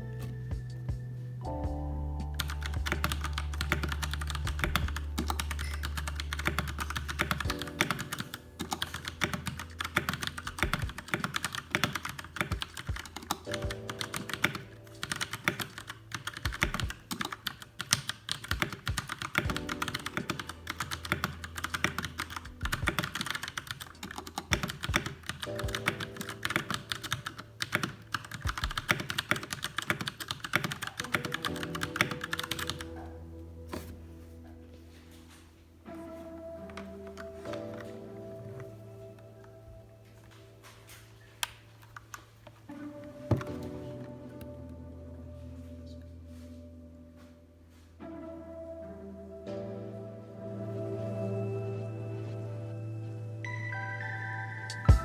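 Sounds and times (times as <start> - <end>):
background music: 0.0 - 55.0
fast mechanical keyboard typing: 2.4 - 32.9.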